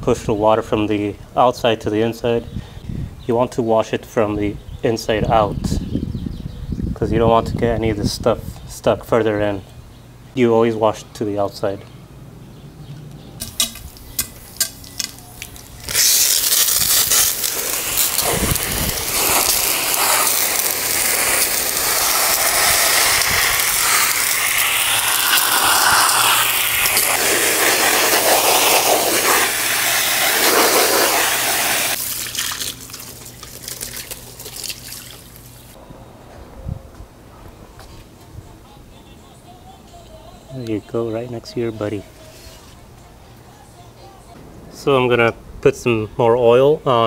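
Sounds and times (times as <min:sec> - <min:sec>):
sharp clicks: 0:13.1 - 0:16.3
hose spraying water: 0:13.4 - 0:35.8.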